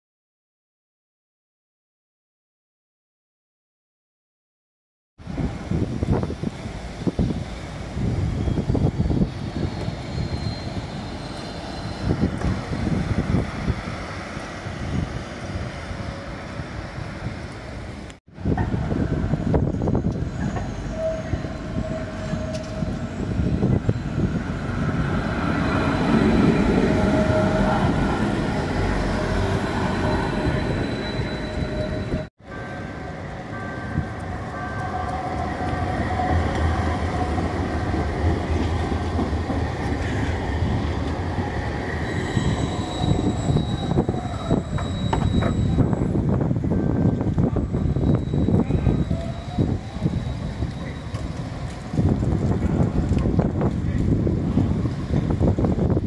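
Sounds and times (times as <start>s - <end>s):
tram rumbling on rails: 5.2s - 56.0s
wheels squealing: 6.6s - 13.0s, 19.4s - 32.3s, 34.2s - 53.4s.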